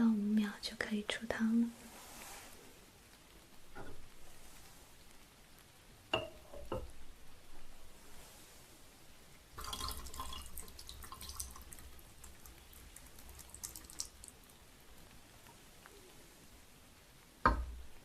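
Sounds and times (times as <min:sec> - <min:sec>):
tea trickling and dripping: 0:09.5 - 0:16.2.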